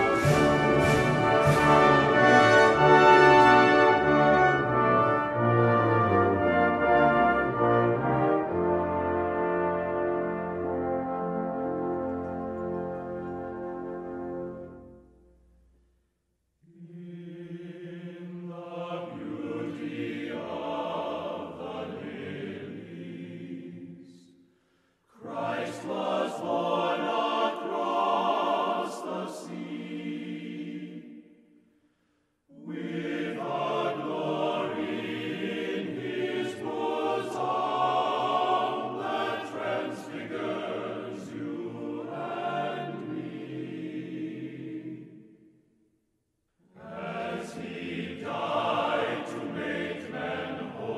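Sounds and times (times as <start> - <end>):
voices singing together: 16.6 - 24.4, 25.2 - 31.4, 32.5 - 45.4, 46.7 - 50.9.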